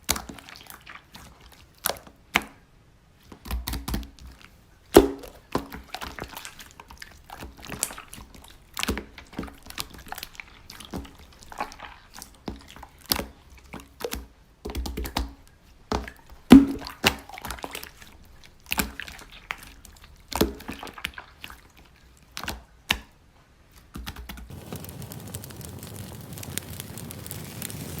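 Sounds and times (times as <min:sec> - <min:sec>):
rustling hiss: 0:24.5 - 0:28.0.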